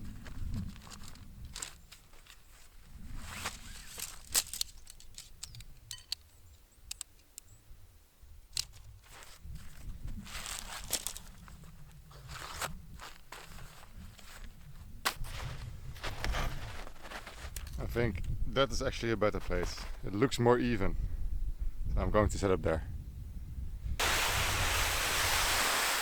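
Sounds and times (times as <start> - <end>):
footsteps crunching in snow: 0.0 - 4.6, 8.7 - 17.9
sharp clicks: 4.3 - 7.5.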